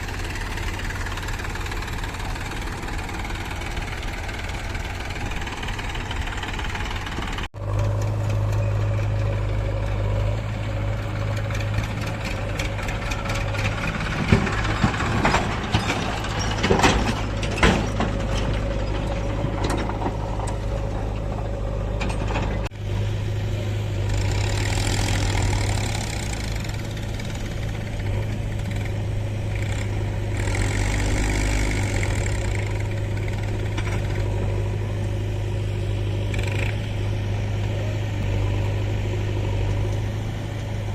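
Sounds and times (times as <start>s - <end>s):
engine idling: 0.0s - 40.9s
sharp knocks and clatters: 11.4s - 21.3s.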